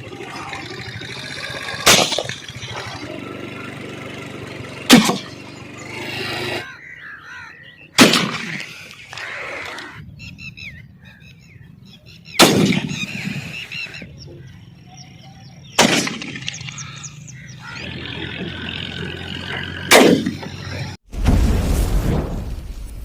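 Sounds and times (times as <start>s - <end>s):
faint birds calling: 0.0s - 21.0s
shotgun shots echoing: 8.0s - 8.6s, 12.4s - 13.1s, 15.8s - 16.6s, 19.9s - 20.4s.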